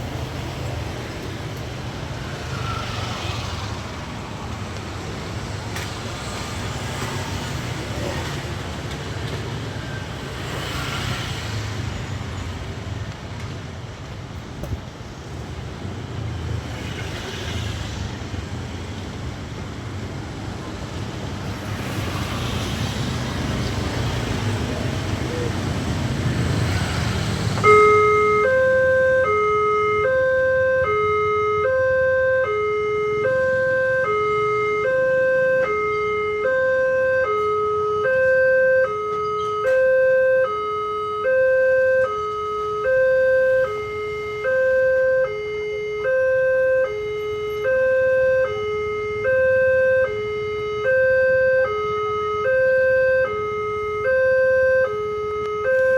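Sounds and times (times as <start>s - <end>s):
road traffic rumble: 0.0s - 55.9s
two-tone level crossing siren: 27.5s - 55.9s.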